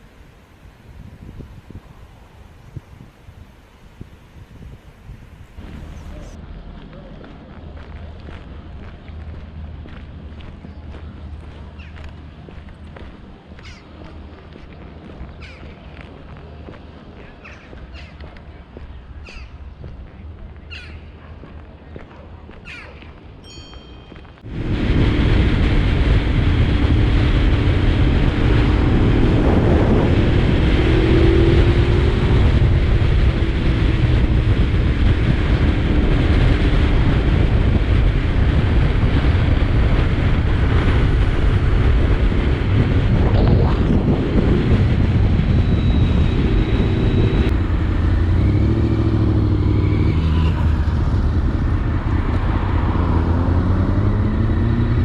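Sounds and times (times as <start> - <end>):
wind rush on microphone: 0.0 - 21.1, 24.4 - 55.0.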